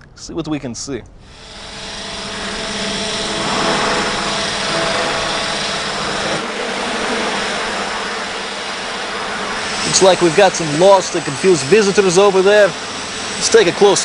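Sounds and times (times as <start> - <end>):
drone propellers whirring: 1.2 - 14.0.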